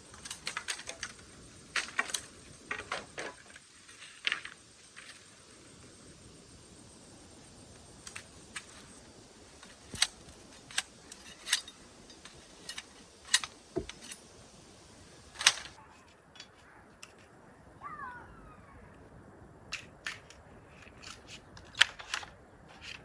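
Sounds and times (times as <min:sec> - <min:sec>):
shears snipping stems: 0:08.1 - 0:14.4, 0:19.7 - 0:23.0.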